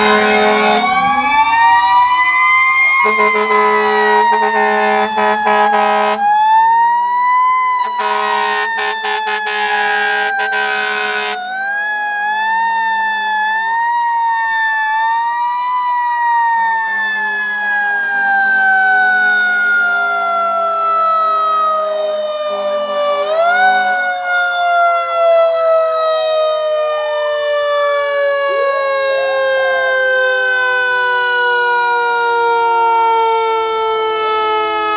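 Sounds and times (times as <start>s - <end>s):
air horn blasts: 0.0s - 1.2s, 3.0s - 6.4s, 7.8s - 11.4s
siren wailing: 0.0s - 34.9s.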